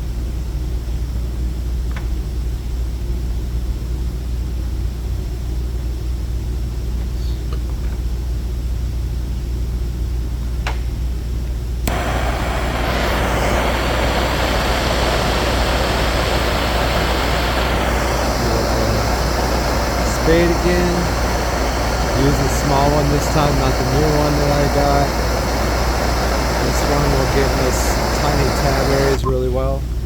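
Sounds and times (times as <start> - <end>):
hot-air tool blowing: 11.8 - 29.5
low hum: 11.9 - 30.0.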